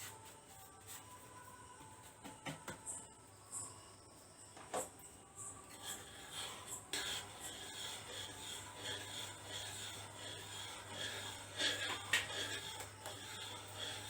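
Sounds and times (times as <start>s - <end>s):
nutmeg grating rasp: 5.7s - 14.0s.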